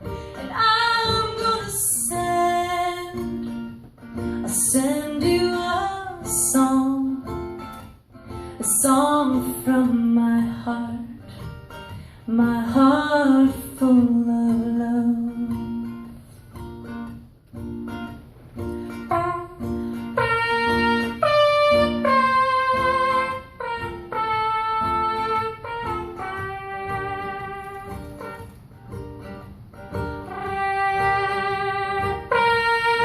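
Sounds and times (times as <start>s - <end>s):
ukulele strumming: 0.0s - 33.0s
trumpet-like lead melody: 19.1s - 28.6s, 29.9s - 33.0s.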